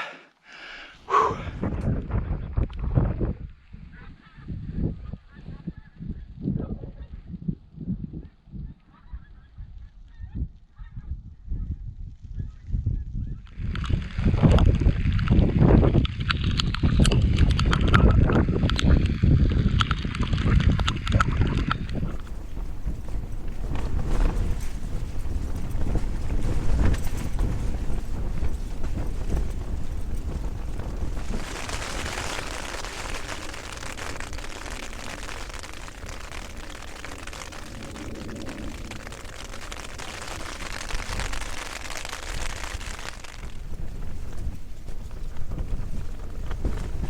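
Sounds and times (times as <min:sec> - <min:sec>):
wind buffeting microphone: 0:01.0 - 0:47.0
rain pattering: 0:13.4 - 0:47.0.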